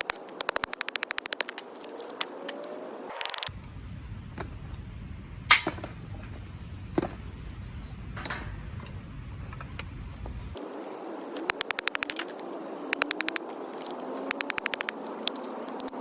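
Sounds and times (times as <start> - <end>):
quick clicks: 0.0 - 3.5, 11.4 - 16.0.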